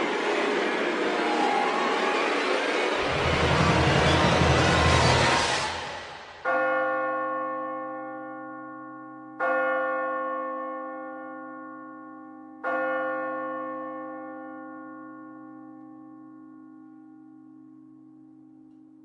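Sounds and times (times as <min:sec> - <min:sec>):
loud rushing noise: 0:00.0 - 0:06.5
large bell tolling: 0:00.0 - 0:18.7.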